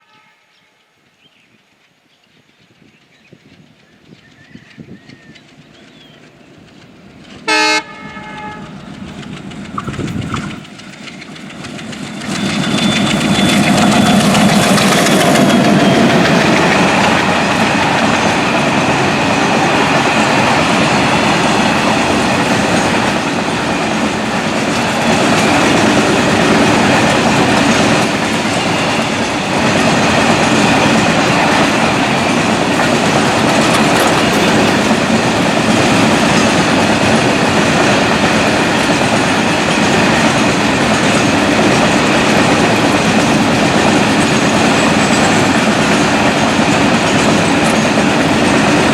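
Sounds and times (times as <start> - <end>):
freight wagons rumbling on rails: 1.2 - 48.9
locomotive horn blast: 7.4 - 8.8.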